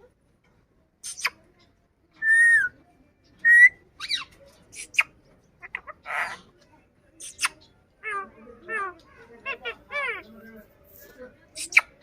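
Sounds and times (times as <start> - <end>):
parrot chirps: 1.0 - 1.4, 3.5 - 6.5, 7.2 - 10.2
parrot squawk: 5.6 - 6.4, 7.2 - 10.2.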